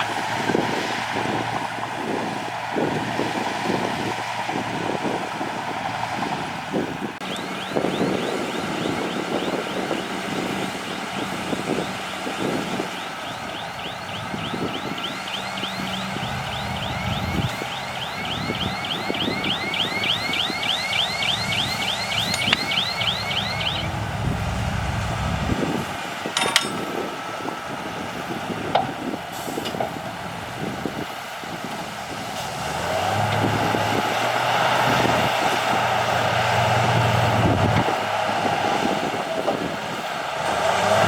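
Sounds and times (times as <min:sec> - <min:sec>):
bulldozer diesel engine under load: 0:00.0 - 0:41.0
steel tracks squealing: 0:07.2 - 0:27.5.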